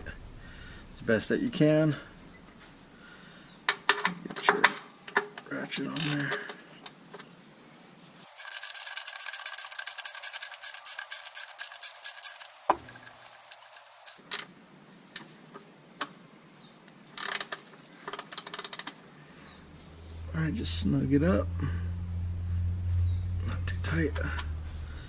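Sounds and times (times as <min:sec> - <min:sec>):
socket ratchet clicking: 0:08.3 - 0:14.2.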